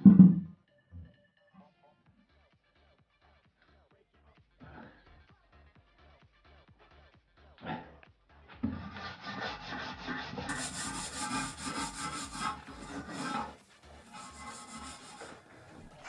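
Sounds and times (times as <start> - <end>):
tool scraping hard surface: 8.6 - 16.0.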